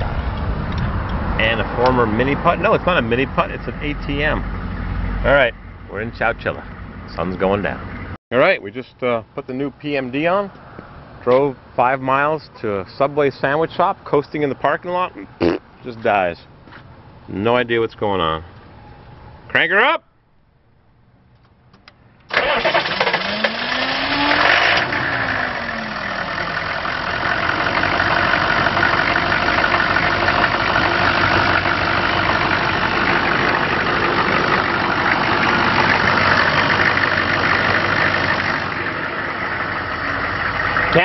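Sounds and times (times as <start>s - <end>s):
diesel engine starting and revving: 0.0s - 8.2s, 22.3s - 41.0s.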